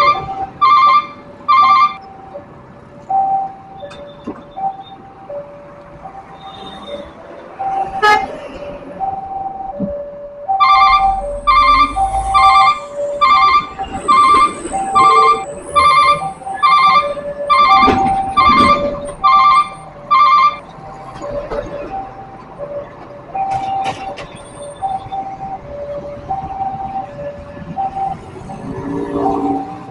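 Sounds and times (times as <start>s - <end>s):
two-tone crossing warning signal: 0.0s - 29.9s
truck horn blasts: 8.0s - 8.3s.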